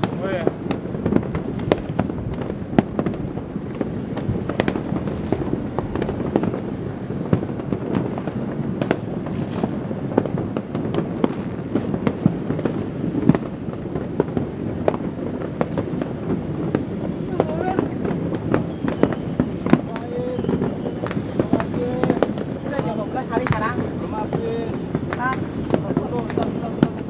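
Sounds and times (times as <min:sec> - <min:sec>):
distant fireworks rumble: 0:00.0 - 0:27.0
fireworks cracks and bangs: 0:00.0 - 0:27.0.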